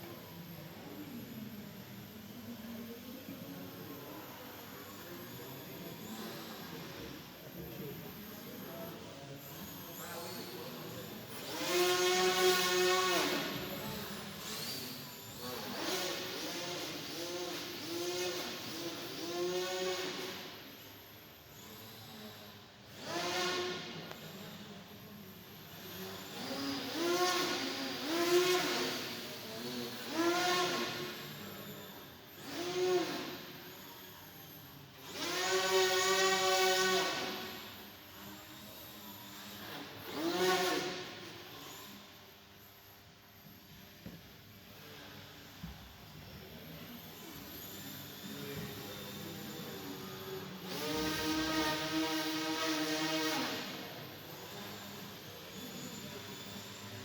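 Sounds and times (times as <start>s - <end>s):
model airplane motor whining: 21.6s - 57.0s.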